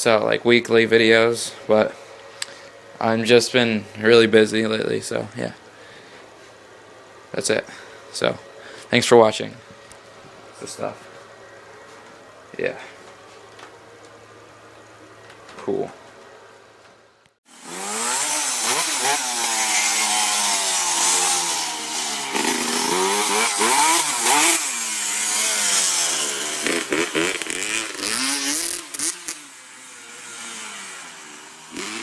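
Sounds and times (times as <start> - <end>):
dirt bike engine revving: 17.5 - 32.0.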